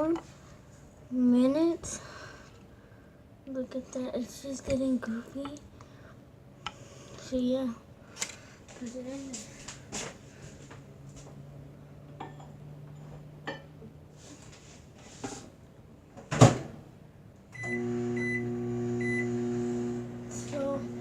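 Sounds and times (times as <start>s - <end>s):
microwave oven humming: 17.5s - 21.0s.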